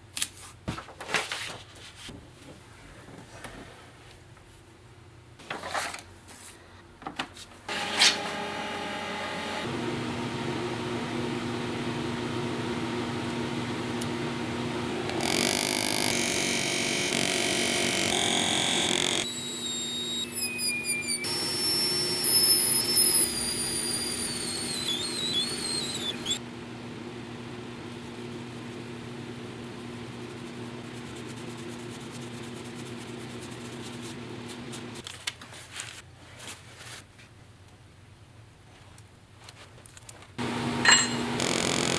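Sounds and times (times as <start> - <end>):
power tool motor running: 7.7 - 26.4, 40.4 - 41.9
high squealing tones: 15.2 - 26.4.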